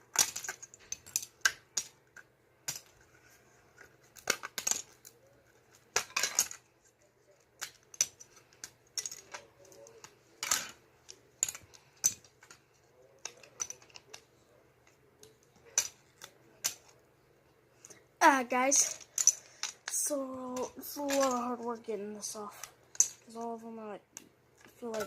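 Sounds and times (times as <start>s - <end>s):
plastic bricks clicking: 0.1s - 2.0s.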